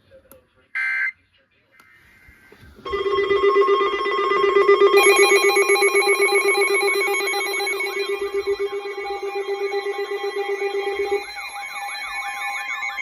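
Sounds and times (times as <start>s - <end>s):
electronic alert tones pulsing: 2.9s - 13.0s
higher alert tones: 2.9s - 13.0s
wavering siren-like tone: 2.9s - 13.0s.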